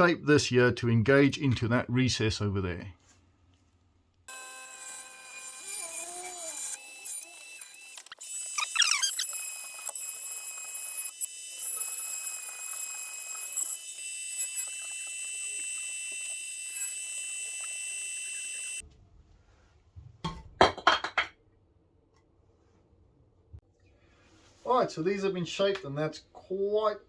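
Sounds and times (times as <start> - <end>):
power tool whining: 4.3 - 18.8.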